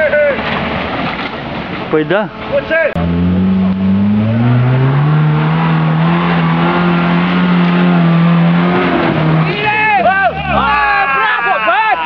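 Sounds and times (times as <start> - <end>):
off-road vehicle engine revving: 2.9 - 11.0.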